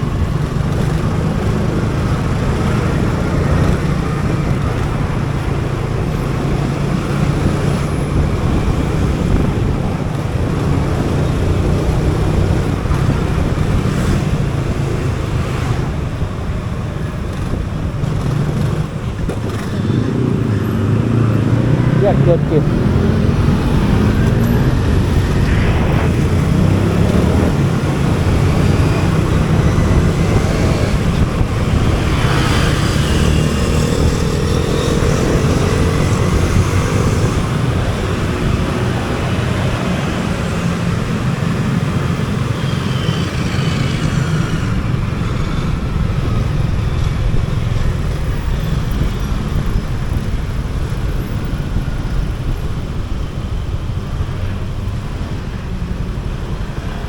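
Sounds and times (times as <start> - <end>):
motorcycle engine rumble: 0.0 - 57.0
road noise: 0.0 - 57.0.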